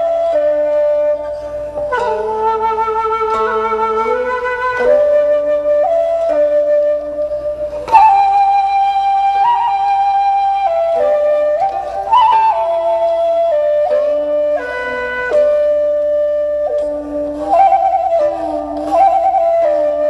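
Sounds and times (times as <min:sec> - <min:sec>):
flute-like melody: 0:00.0 - 0:20.0
soft low accompaniment: 0:00.0 - 0:20.0.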